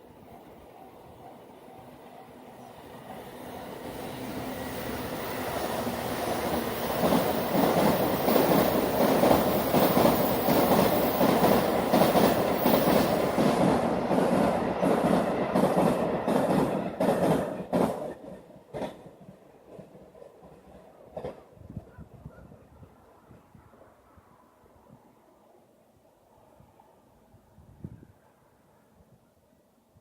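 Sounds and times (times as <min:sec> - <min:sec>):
freight train rumbling past: 0:00.0 - 0:21.6.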